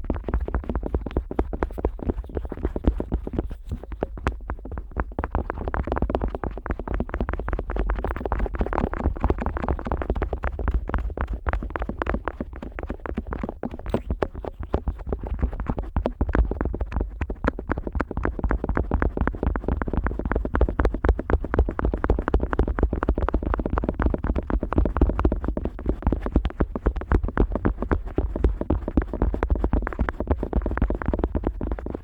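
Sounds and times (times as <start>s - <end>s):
scratching on rubber ear: 0.1s - 20.4s.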